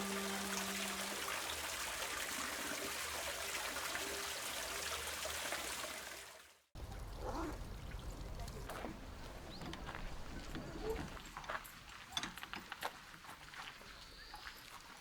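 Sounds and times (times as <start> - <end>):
running water rushing: 0.0 - 9.5.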